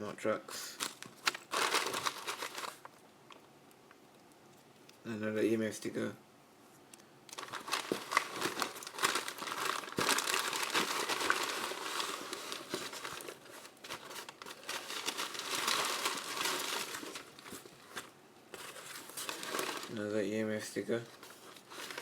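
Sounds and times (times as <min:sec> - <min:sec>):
packaging crinkling: 0:00.7 - 0:03.0, 0:07.3 - 0:20.1, 0:21.0 - 0:22.0.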